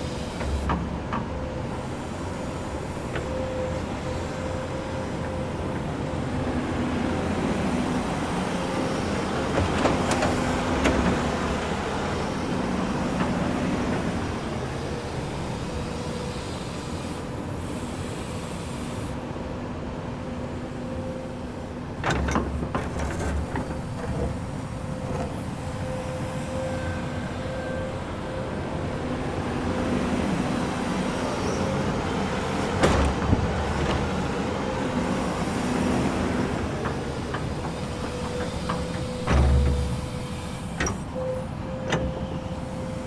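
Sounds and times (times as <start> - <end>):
excavator diesel engine droning: 19.3 - 43.0
metallic clanks and thumps: 36.9 - 41.0.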